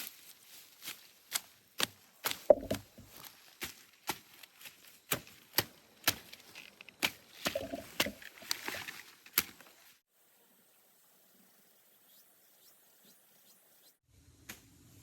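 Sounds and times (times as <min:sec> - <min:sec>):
hand tool chopping: 0:05.1 - 0:06.4.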